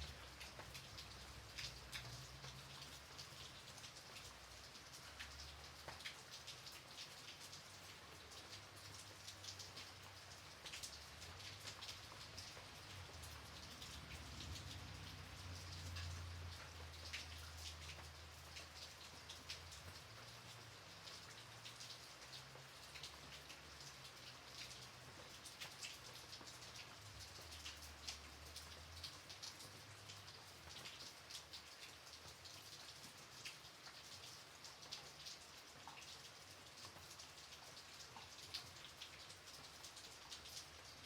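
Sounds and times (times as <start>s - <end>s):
light rain falling: 0.0s - 41.0s.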